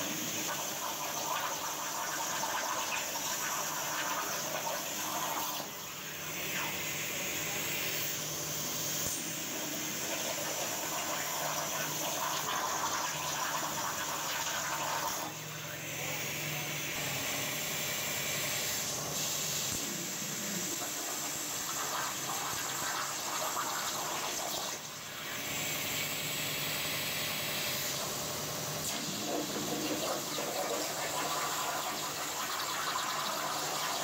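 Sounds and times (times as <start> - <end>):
plasma torch hissing: 16.0 - 26.2, 27.2 - 34.0.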